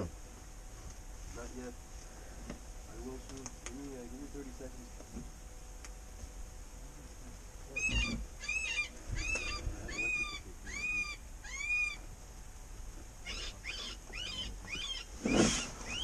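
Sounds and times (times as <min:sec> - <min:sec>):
high arching distress cries: 0:07.8 - 0:12.0.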